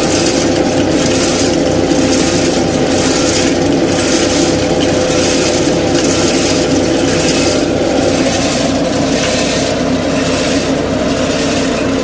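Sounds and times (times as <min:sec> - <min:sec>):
harvester rushing noise: 0:00.0 - 0:12.0
tractor engine hum: 0:00.0 - 0:12.0.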